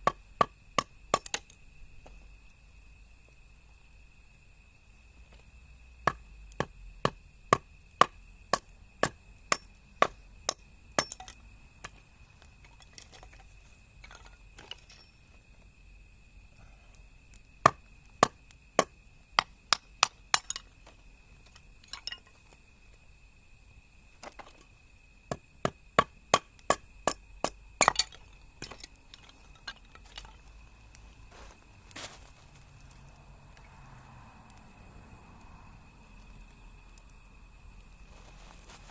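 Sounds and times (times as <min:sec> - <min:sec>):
hatchet chopping wood: 0:00.0 - 0:01.5, 0:06.0 - 0:12.0, 0:17.6 - 0:20.6, 0:25.3 - 0:28.2.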